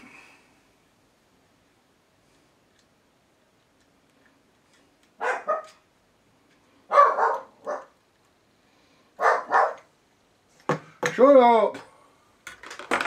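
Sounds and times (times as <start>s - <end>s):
dog barking: 5.2s - 5.8s, 6.9s - 8.0s, 9.2s - 9.9s.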